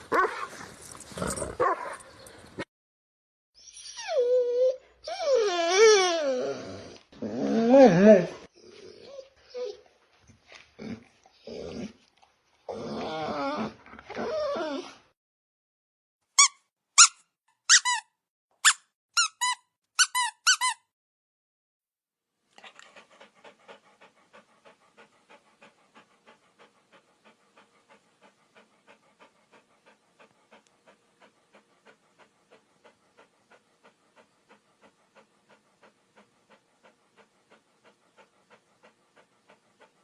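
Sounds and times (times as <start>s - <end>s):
dog whining yelps: 3.6s - 6.9s
dog panting: 22.5s - 40.0s.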